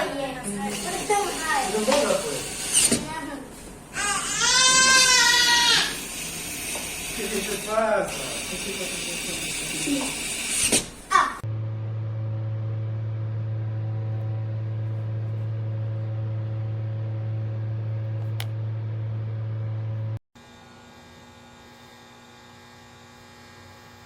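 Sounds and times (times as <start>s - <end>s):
low hum: 11.4s - 20.2s.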